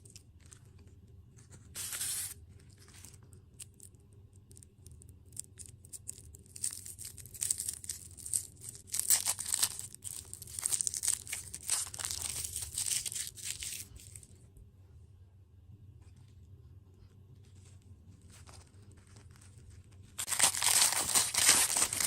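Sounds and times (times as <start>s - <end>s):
plastic packaging crinkling and tearing: 5.5s - 14.3s, 20.2s - 22.0s.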